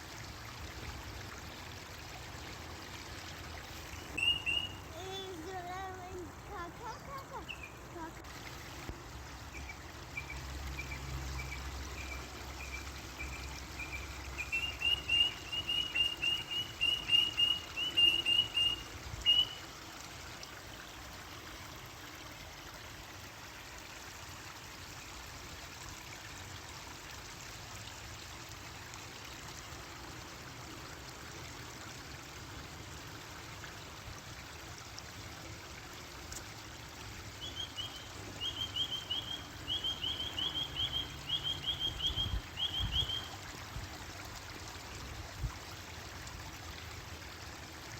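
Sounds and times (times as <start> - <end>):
water trickling: 0.0 - 47.9
bird chirping: 4.0 - 4.8, 9.5 - 19.6, 37.4 - 43.3.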